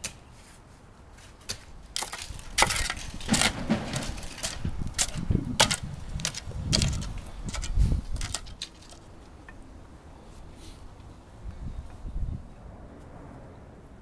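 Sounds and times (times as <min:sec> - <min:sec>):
sharp knocks and cracks: 0:01.4 - 0:09.0
dull thuds: 0:02.0 - 0:08.6.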